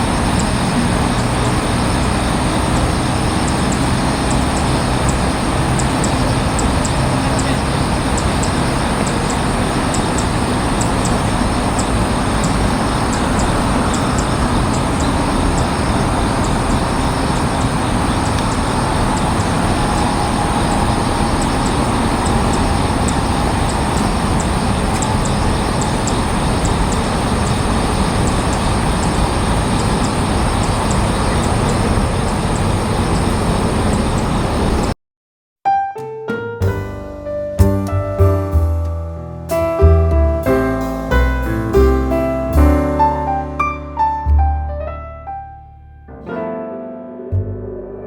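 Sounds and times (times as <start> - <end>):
distant road traffic roar: 0.0 - 35.0.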